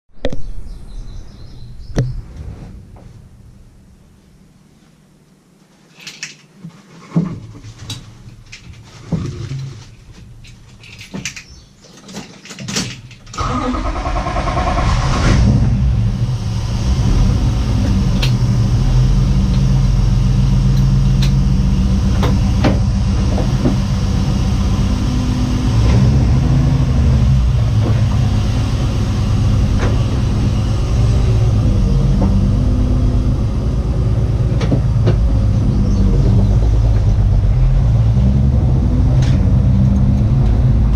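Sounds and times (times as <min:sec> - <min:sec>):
car engine cranking and idling: 0:13.2 - 0:40.9.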